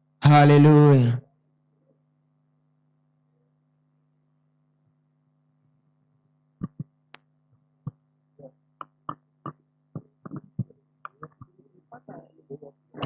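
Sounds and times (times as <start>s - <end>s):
low electrical hum: 0.0s - 13.0s
sharp knocks and taps: 6.6s - 8.0s, 8.8s - 11.6s.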